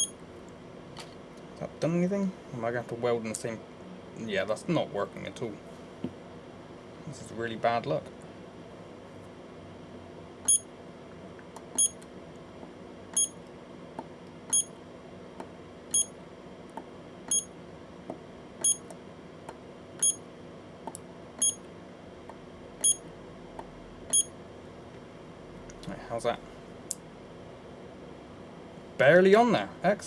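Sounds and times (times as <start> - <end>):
spot welder beeping: 0.0 - 0.2, 10.4 - 10.7, 11.7 - 12.0, 13.1 - 13.4, 14.5 - 14.8, 15.9 - 16.2, 17.3 - 17.6, 18.6 - 18.9, 20.0 - 20.3, 21.4 - 21.7, 22.8 - 23.1, 24.1 - 24.4.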